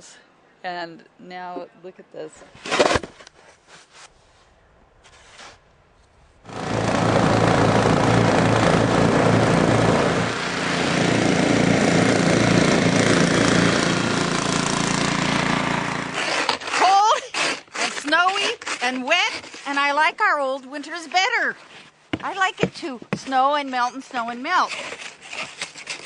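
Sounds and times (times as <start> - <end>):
engine running loud: 6.5 - 16.2.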